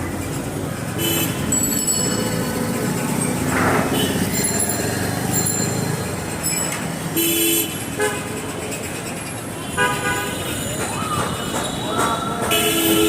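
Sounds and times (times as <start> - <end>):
street traffic: 0.0 - 13.0
vehicle horn toot: 11.4 - 13.0.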